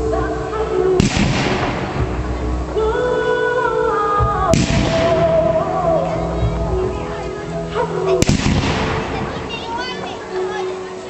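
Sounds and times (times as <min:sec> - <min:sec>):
music with long held notes: 0:00.0 - 0:11.0
firework shells bursting: 0:08.2 - 0:09.5.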